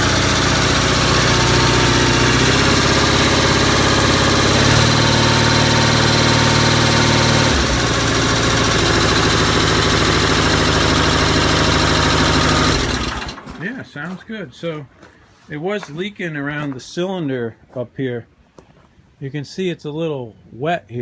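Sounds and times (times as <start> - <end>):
tractor engine running: 0.0 - 14.7.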